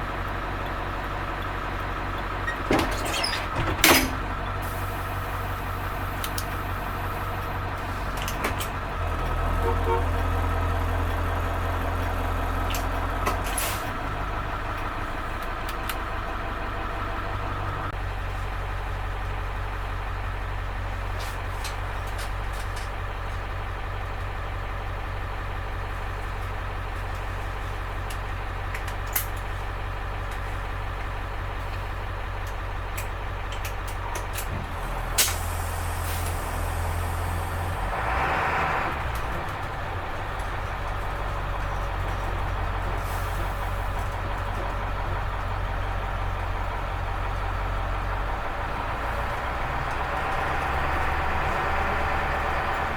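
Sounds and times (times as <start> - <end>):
bus engine humming: 0.0 - 52.9
short hiss: 35.1 - 37.7.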